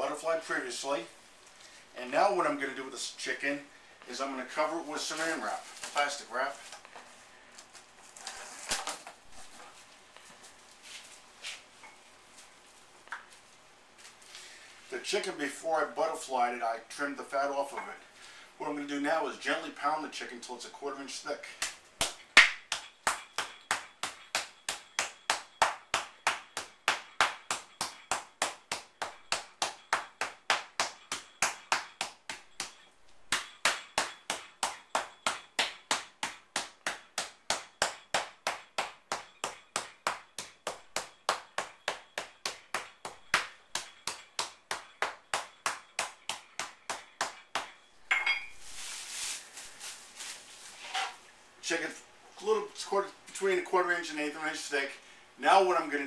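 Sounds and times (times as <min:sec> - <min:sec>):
soft rustling: 0:03.6 - 0:15.0, 0:48.4 - 0:51.4
meat mallet pounding: 0:21.6 - 0:47.8.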